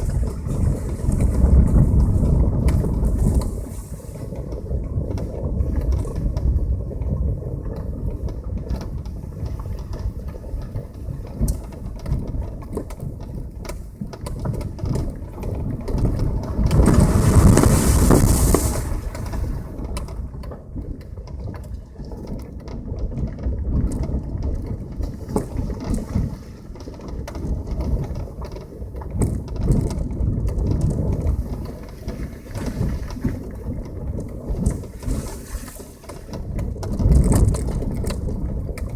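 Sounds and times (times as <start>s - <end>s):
loud rushing noise: 16.7s - 19.3s.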